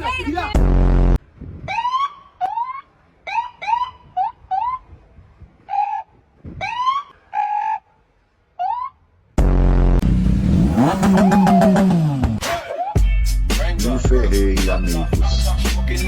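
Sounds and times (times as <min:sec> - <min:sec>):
siren whoops: 0:11.0 - 0:11.8.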